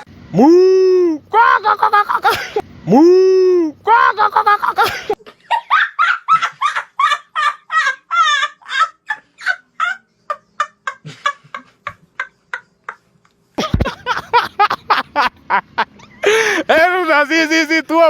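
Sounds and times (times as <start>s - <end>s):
man imitating hen clucking: 0.0s - 5.0s.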